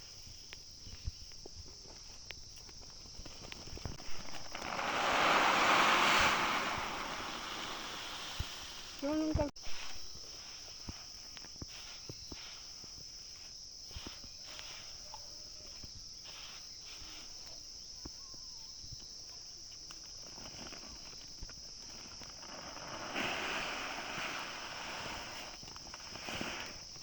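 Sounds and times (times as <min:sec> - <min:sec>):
rustling: 0:00.0 - 0:17.8, 0:19.9 - 0:27.0
insects droning: 0:00.0 - 0:27.0.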